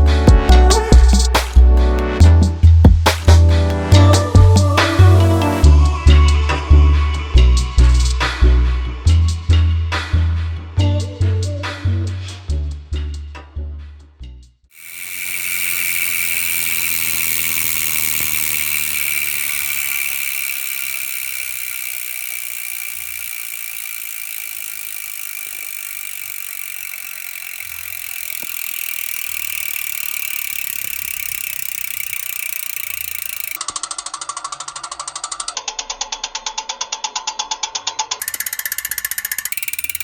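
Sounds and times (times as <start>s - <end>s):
bicycle freewheel buzzing: 14.7s - 36.0s, 38.0s - 40.0s.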